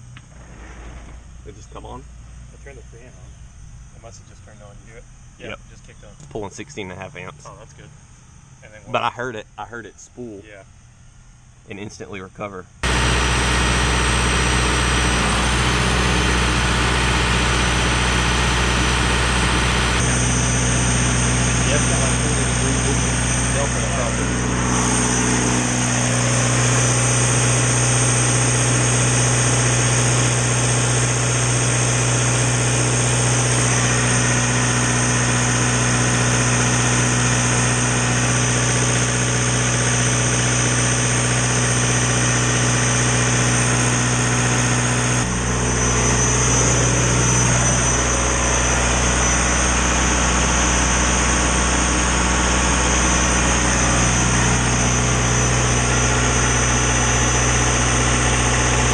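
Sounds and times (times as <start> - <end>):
diesel generator engine running: 12.8 - 58.9
high whine: 12.8 - 58.9.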